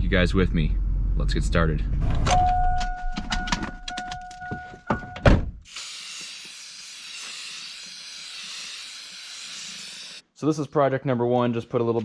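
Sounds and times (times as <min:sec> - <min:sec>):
aerosol can spraying: 0:05.7 - 0:10.2.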